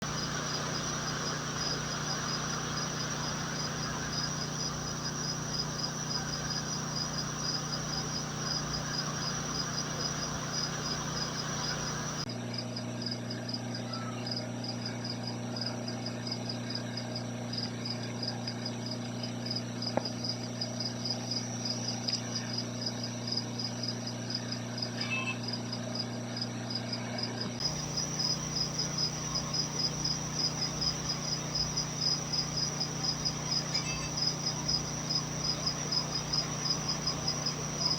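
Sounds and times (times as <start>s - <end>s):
insects chirping high-pitched: 0.0s - 12.3s, 27.6s - 37.9s
steady low hum: 0.0s - 12.3s, 27.6s - 37.9s.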